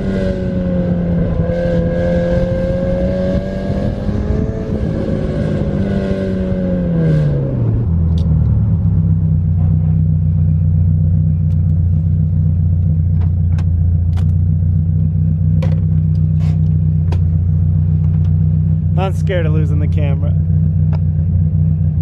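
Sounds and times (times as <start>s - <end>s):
car engine droning: 0.0s - 22.0s.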